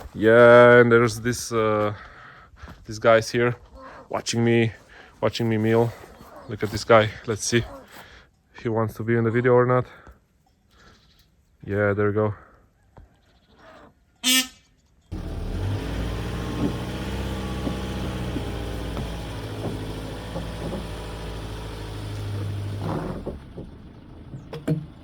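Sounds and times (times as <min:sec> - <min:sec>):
short sharp call: 0:14.2 - 0:14.7
chainsaw engine running: 0:15.1 - 0:24.2.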